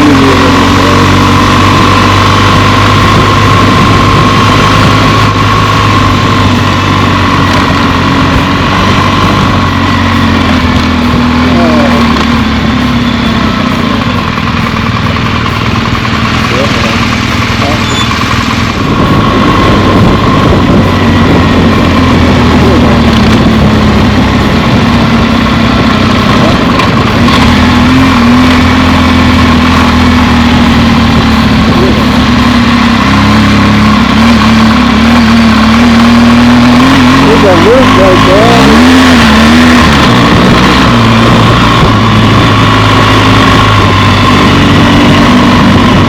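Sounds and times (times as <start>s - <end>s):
road and wind noise: 0.0s - 46.0s
steady whine: 0.0s - 46.0s
vehicle engine running: 0.0s - 46.0s.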